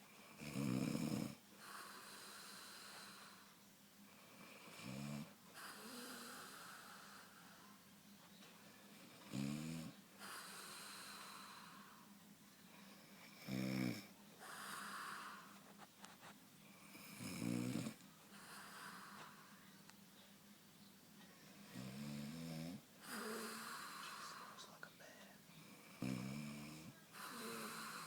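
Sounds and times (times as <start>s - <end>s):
woman snoring: 0.3s - 3.5s, 4.3s - 7.6s, 9.2s - 12.0s, 13.3s - 15.6s, 16.8s - 19.6s, 21.6s - 28.0s.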